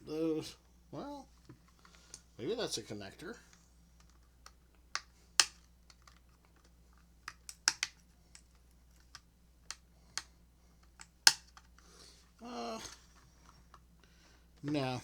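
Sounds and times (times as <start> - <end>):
plastic parts clicking and tapping: 3.5 - 11.9.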